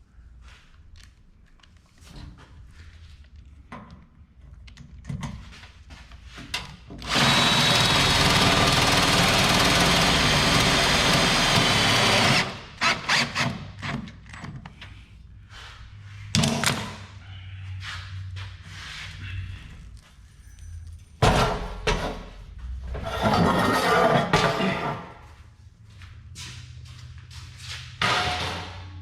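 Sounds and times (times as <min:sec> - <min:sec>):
power drill running: 0:07.0 - 0:13.5
parts knocking and clattering: 0:20.8 - 0:25.1, 0:27.9 - 0:29.0.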